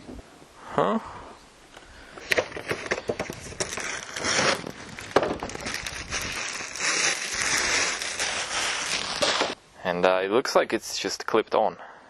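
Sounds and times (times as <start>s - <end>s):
crackly plastic rustling: 2.2s - 9.6s.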